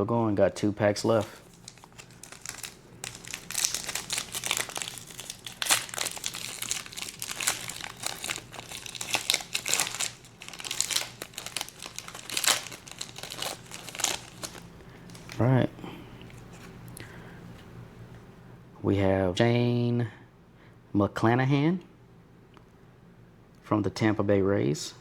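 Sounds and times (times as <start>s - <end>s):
foil wrapper crinkling and tearing: 1.0s - 15.5s.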